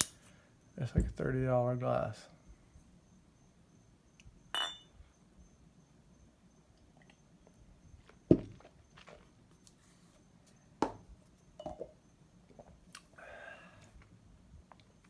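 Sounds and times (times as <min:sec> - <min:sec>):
objects knocking on tabletop: 0:10.8 - 0:11.0.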